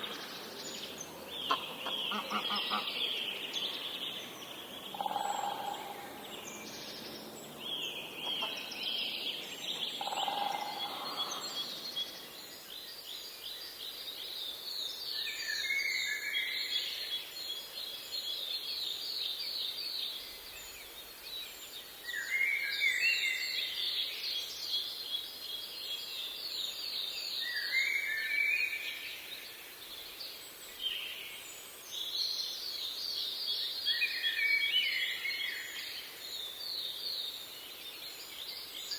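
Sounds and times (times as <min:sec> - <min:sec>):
birds trilling and chirping: 0:00.0 - 0:12.4.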